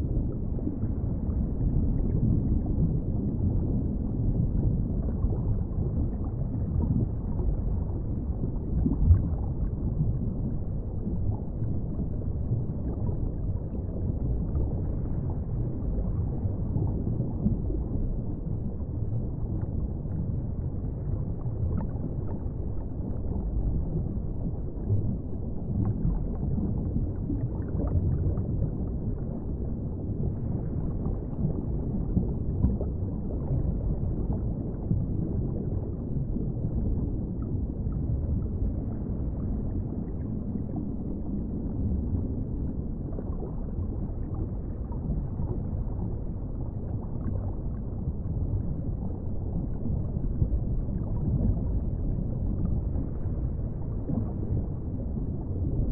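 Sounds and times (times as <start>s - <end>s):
muffled underwater rumble: 0.0s - 55.9s.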